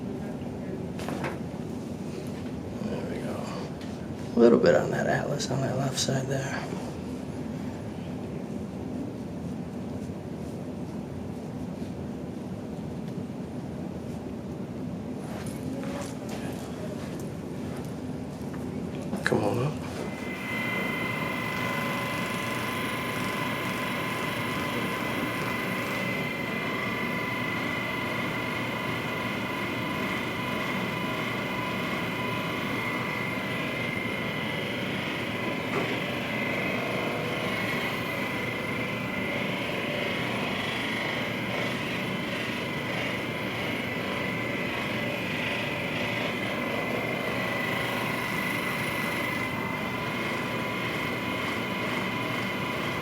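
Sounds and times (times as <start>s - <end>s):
massage gun motor whirring: 20.0s - 53.0s.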